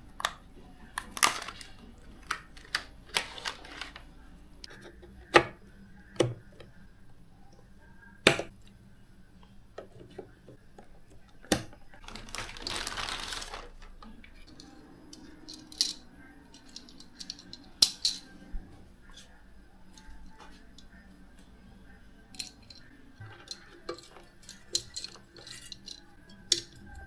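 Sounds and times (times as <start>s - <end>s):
packaging rustling: 1.0s - 4.1s, 12.0s - 14.1s.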